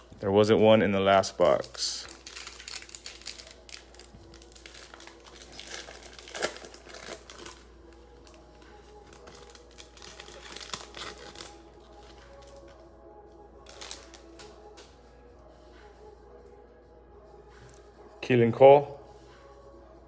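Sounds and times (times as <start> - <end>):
foil wrapper crinkling and tearing: 1.4 - 12.6, 13.6 - 14.9.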